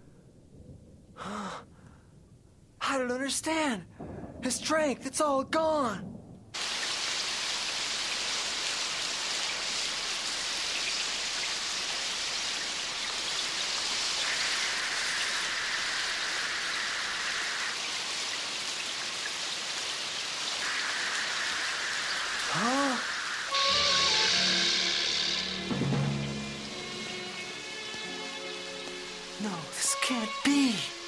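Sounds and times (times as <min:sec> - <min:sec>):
heavy rain downpour: 0:06.6 - 0:31.0.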